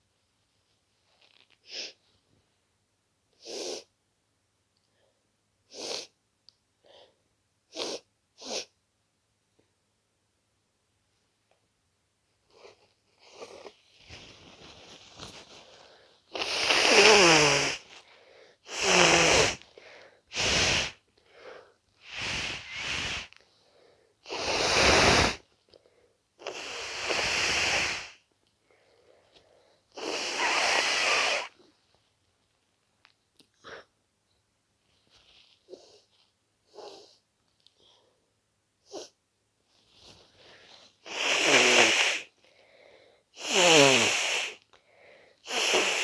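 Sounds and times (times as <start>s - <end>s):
person blowing nose: 5.7s - 6.1s, 7.7s - 8.7s, 13.3s - 21.0s, 22.0s - 23.4s, 24.2s - 25.5s, 26.4s - 28.2s, 30.0s - 31.6s, 41.0s - 42.4s, 43.4s - 44.6s, 45.4s - 46.0s.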